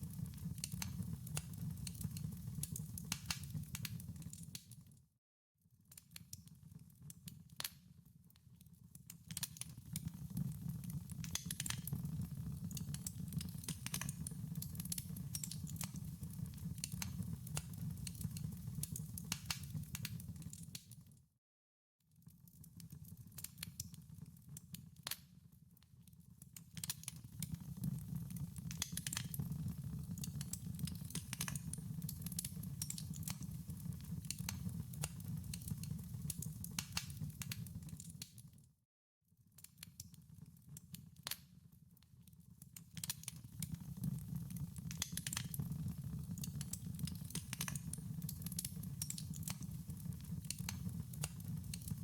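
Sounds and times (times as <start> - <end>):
fire crackling and popping: 0.0 - 4.9, 9.1 - 21.1, 22.5 - 25.2, 26.5 - 38.4, 42.8 - 52.0.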